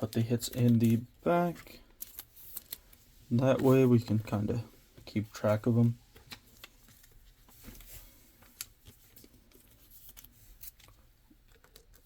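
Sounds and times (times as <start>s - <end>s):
trading cards clicking and rustling: 0.0s - 4.5s.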